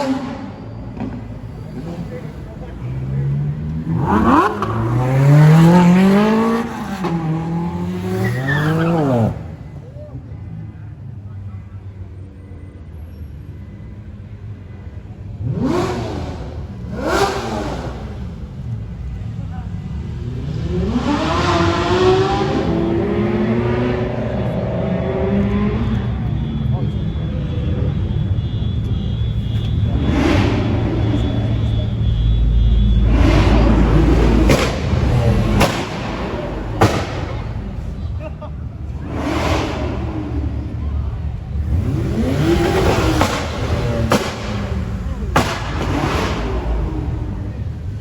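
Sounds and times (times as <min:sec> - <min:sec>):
car engine revving hard: 0:00.0 - 0:09.7, 0:15.4 - 0:18.9, 0:20.0 - 0:26.2, 0:29.5 - 0:38.0, 0:38.7 - 0:48.0
exhaust and road noise rush: 0:00.0 - 0:48.0.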